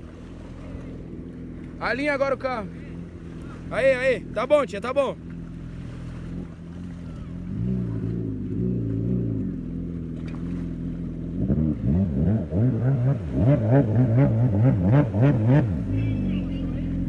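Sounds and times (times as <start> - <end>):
engine revving: 5.2 - 17.0.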